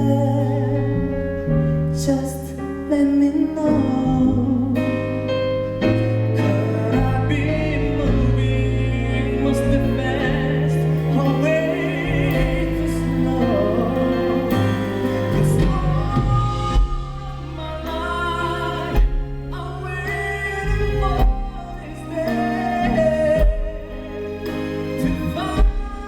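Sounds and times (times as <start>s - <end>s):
live band playing a ballad: 0.0s - 26.0s.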